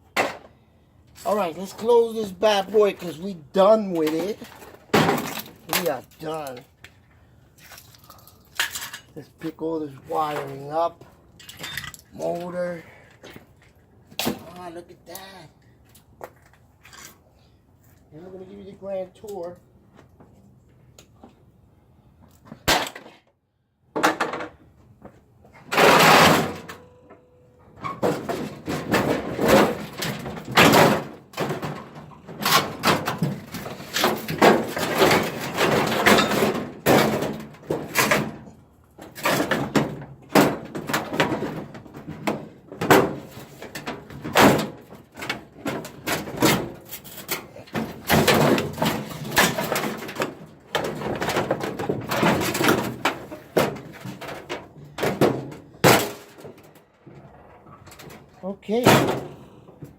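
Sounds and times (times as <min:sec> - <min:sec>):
scrap metal knocking and rattling: 0:01.2 - 0:06.7, 0:25.5 - 0:59.9.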